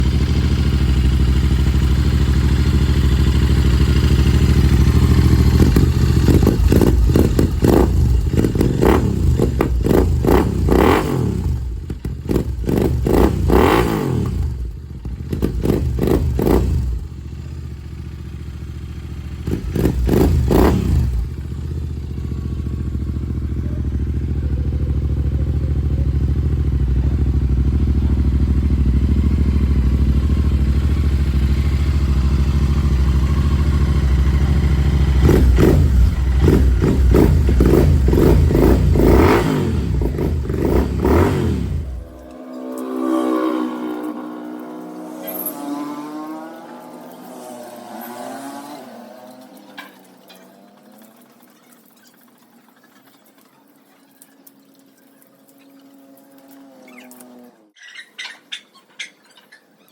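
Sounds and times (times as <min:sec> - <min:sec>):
motorcycle engine revving: 0:00.0 - 0:53.2.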